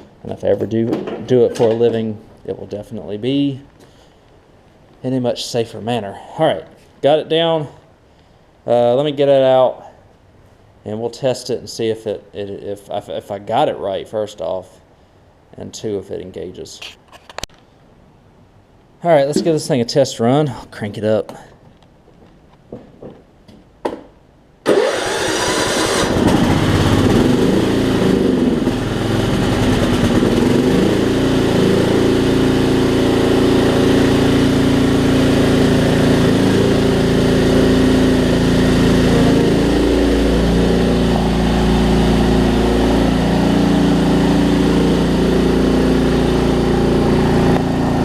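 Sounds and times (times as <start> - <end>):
mower engine cranking and starting: 24.6 - 48.0.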